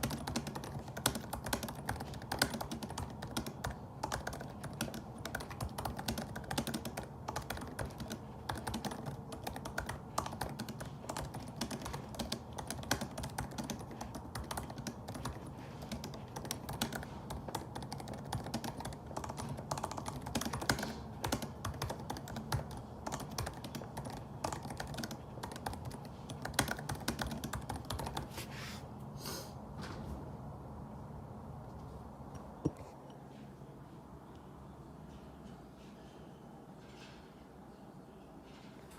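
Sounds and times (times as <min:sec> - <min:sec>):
fast typing on keyboard: 0:00.0 - 0:28.3.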